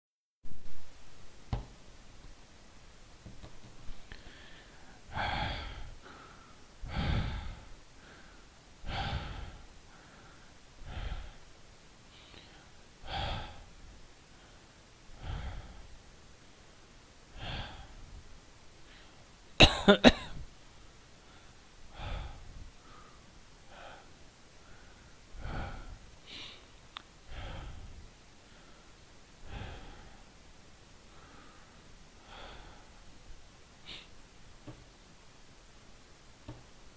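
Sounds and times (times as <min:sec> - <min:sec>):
person breathing heavily: 0:04.1 - 0:16.0, 0:17.3 - 0:18.2, 0:18.8 - 0:19.2, 0:21.2 - 0:30.4, 0:31.1 - 0:33.0
person coughing: 0:19.6 - 0:20.4.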